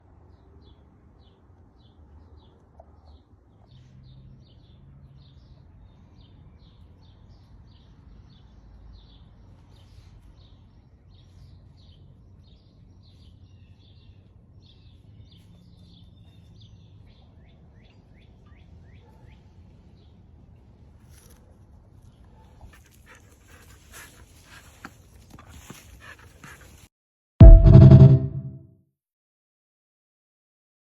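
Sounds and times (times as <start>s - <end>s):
songbirds chirping: 0.3s - 20.2s.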